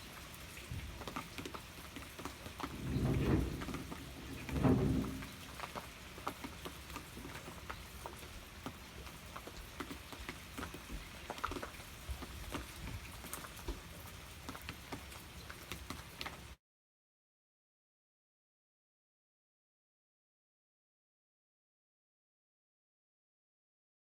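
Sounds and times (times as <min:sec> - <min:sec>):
steady rain hiss: 0:00.0 - 0:16.6.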